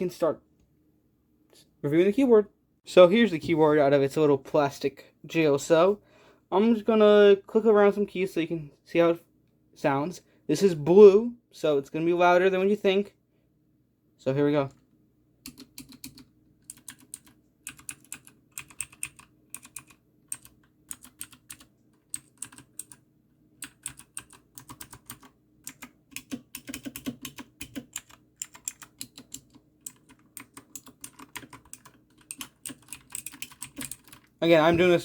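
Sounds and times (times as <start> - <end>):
mechanical keyboard typing: 15.4 - 23.0, 23.6 - 34.4.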